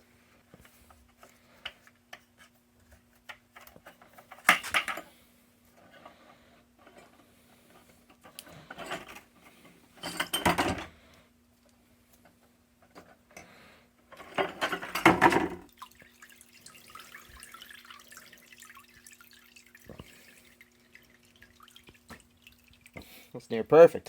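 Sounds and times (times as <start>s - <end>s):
faint dripping and trickling: 15.6s - 23.4s
liquid splashing: 15.7s - 23.3s.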